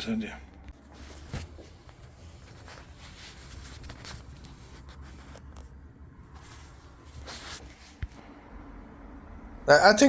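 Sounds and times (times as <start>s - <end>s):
rubbing and scraping handling noises: 0.6s - 8.2s.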